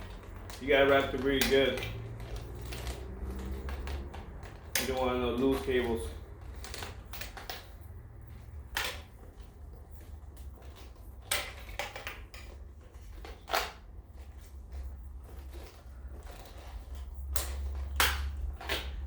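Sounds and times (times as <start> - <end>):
cable rustling and clicking: 0.0 - 19.0.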